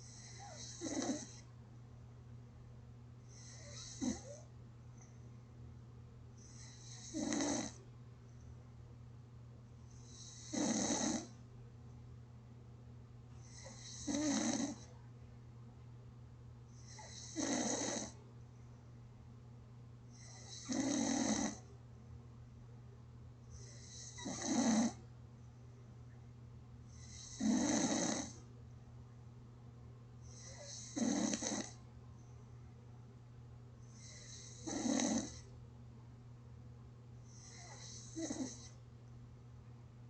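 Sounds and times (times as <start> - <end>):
person snoring gently: 0.0 - 1.4, 3.3 - 4.4, 6.4 - 7.8, 10.0 - 11.3, 13.4 - 14.9, 16.8 - 18.2, 20.2 - 21.6, 23.6 - 25.0, 27.0 - 28.4, 30.3 - 31.8, 34.0 - 35.4, 37.3 - 38.8
faint low hum: 0.0 - 40.0.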